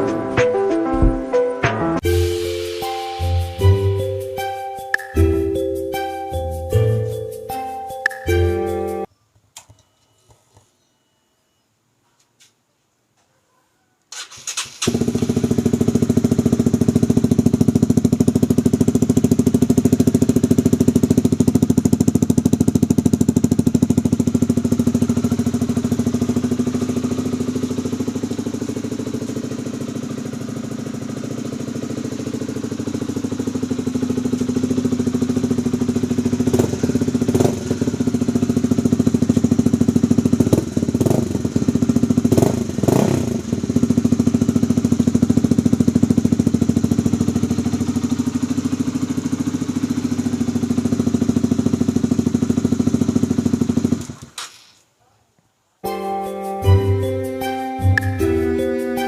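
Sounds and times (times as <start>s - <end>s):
motorcycle engine idling: 14.2s - 54.4s.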